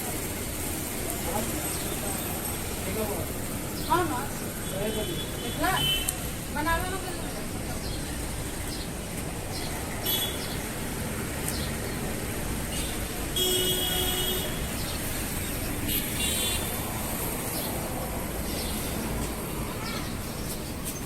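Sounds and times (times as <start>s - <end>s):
street traffic noise: 0.0s - 21.0s
vehicle horn toots: 13.4s - 14.6s.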